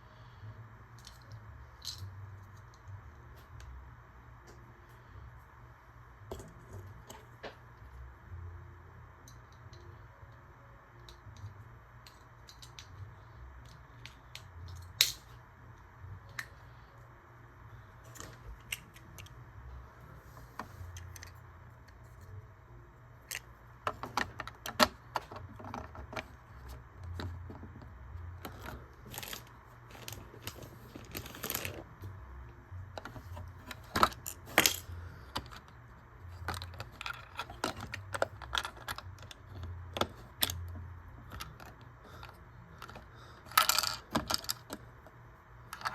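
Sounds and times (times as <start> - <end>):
steady low hum: 0.0 - 45.9
plastic bricks clicking and rattling: 36.3 - 44.8.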